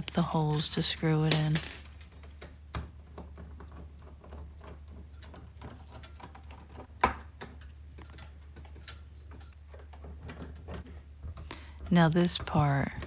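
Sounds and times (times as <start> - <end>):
low steady hum: 0.0 - 2.4.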